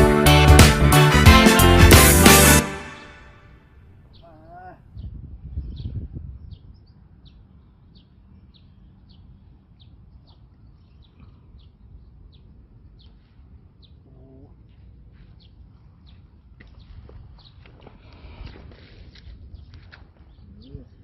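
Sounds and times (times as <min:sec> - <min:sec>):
bird chirping: 0:04.0 - 0:17.7
wind rumbling on microphone: 0:04.8 - 0:13.9, 0:14.5 - 0:21.0.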